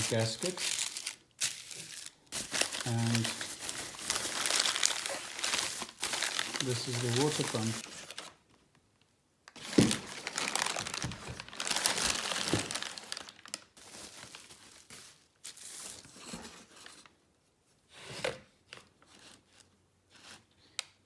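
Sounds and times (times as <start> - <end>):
packaging crinkling and tearing: 0.0 - 8.4, 9.5 - 16.2.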